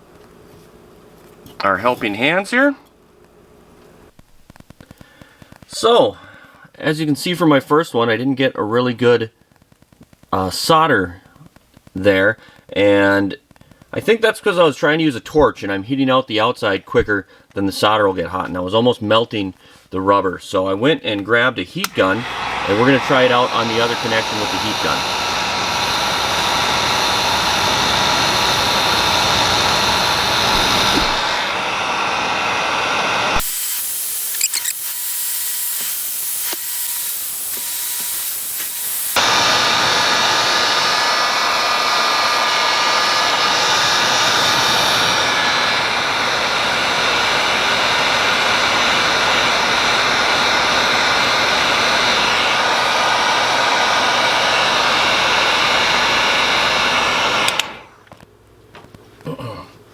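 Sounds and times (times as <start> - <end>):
heat gun blowing with fan whine: 21.8 - 58.2.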